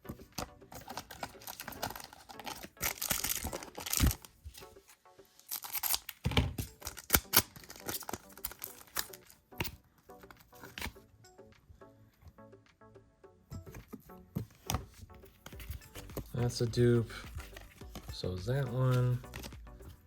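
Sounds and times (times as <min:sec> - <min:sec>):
foil pack crinkling and tearing: 0:00.9 - 0:04.3, 0:05.5 - 0:09.3.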